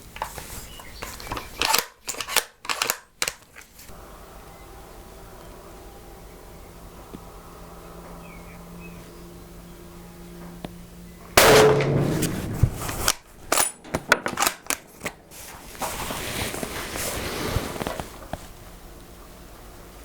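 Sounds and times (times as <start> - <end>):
rifle bolt clicks and knocks: 0.2 - 3.8, 11.4 - 15.2
rifle shot ringing out: 11.4 - 15.0.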